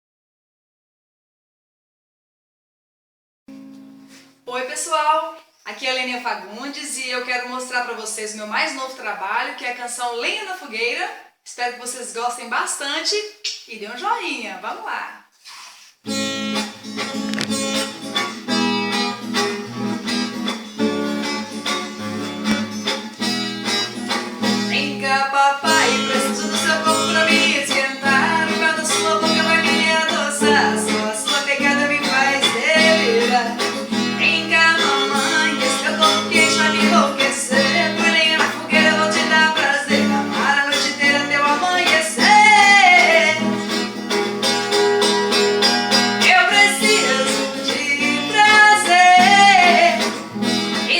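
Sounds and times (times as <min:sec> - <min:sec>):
guitar accompaniment: 0:03.5 - 0:04.4, 0:16.1 - 0:50.9
woman singing: 0:24.7 - 0:43.6, 0:46.2 - 0:50.9.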